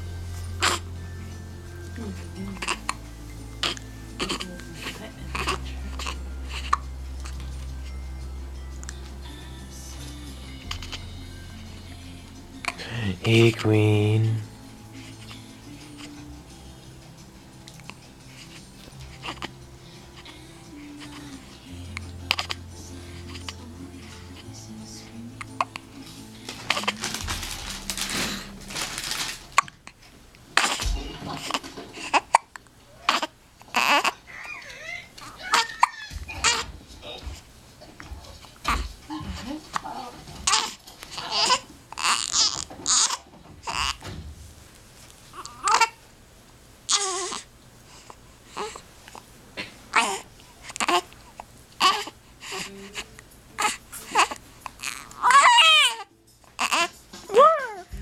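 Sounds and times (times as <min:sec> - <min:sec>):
infant hiccupping: 0:02.4 - 0:07.4, 0:30.6 - 0:38.0, 0:39.8 - 0:44.1, 0:45.4 - 0:46.0, 0:48.6 - 0:52.6
baby crying: 0:32.9 - 0:37.3, 0:40.0 - 0:44.0, 0:45.4 - 0:46.0, 0:46.9 - 0:47.5, 0:49.9 - 0:51.1, 0:51.8 - 0:52.6, 0:53.6 - 0:57.9.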